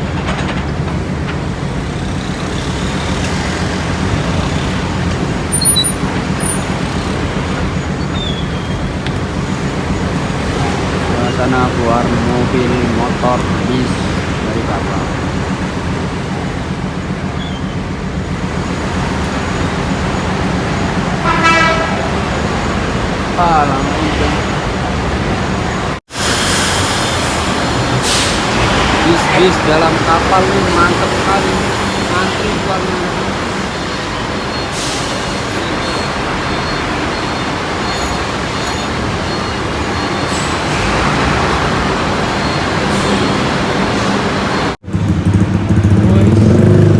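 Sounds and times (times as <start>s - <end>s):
low rumble of vehicle engines: 0.0s - 46.9s.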